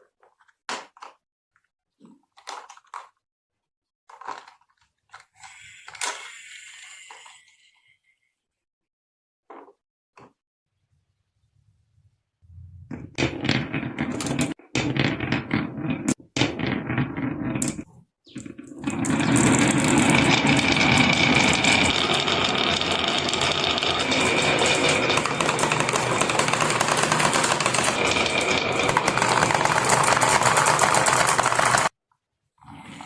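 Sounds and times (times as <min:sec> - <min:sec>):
marbles rolling and clattering: 0:13.1 - 0:32.0.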